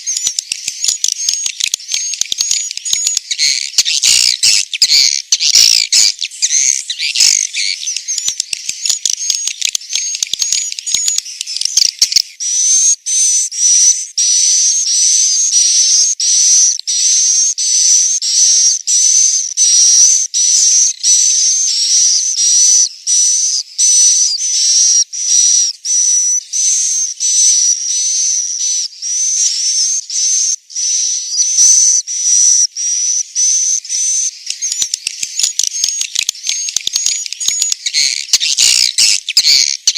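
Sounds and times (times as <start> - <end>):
short repeated whistling chirps: 0.0 - 16.2, 21.4 - 39.9
swiftlets twittering: 34.5 - 39.9.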